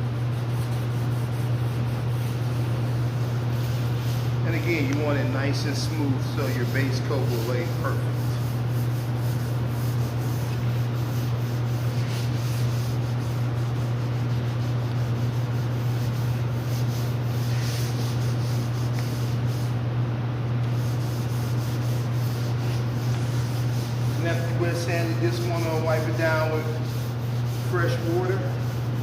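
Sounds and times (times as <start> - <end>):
sandpaper rubbing back and forth: 0.0 - 19.8, 20.6 - 29.0.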